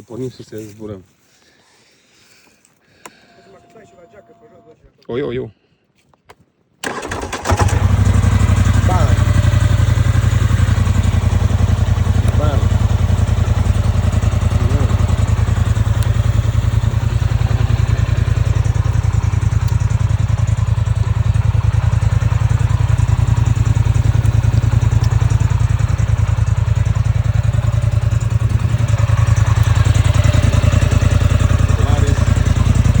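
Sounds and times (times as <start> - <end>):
atv engine idling: 6.8 - 33.0.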